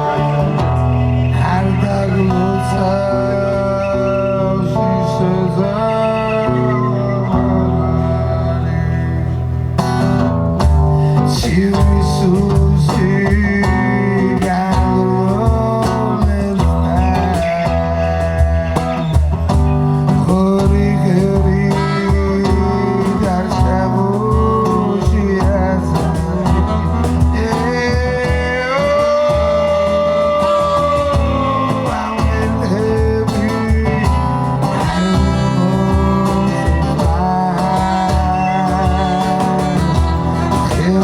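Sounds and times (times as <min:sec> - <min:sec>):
live band playing: 0:00.0 - 0:41.0
pulsing bass: 0:00.0 - 0:41.0
lead melody with held note: 0:33.0 - 0:41.0.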